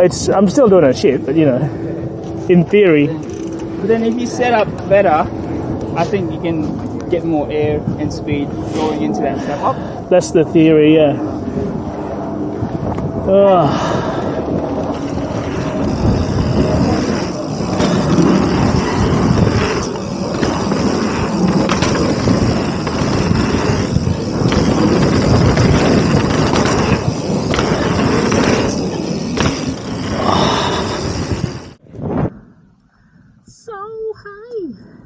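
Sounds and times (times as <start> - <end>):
bike tyres rolling over dirt: 2.4 - 9.5, 10.8 - 31.8
bike knocks and rattles: 14.5 - 31.8.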